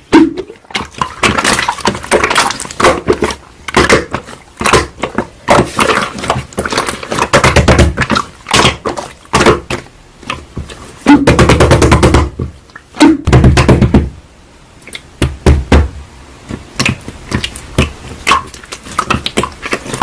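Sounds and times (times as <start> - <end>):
hands squishing slime: 0.0 - 11.5, 16.4 - 20.0.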